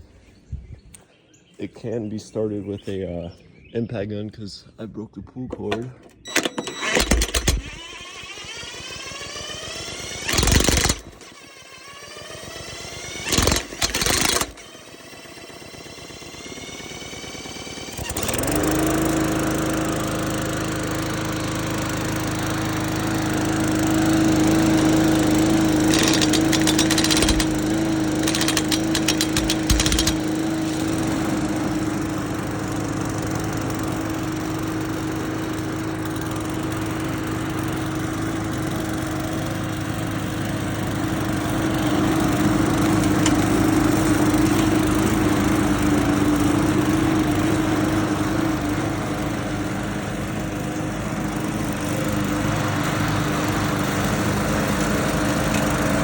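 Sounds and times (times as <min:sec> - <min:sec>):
lawn mower engine running: 0:05.5 - 0:56.0
rapid mechanical rattling: 0:06.2 - 0:18.8, 0:25.0 - 0:31.5, 0:41.4 - 0:46.0.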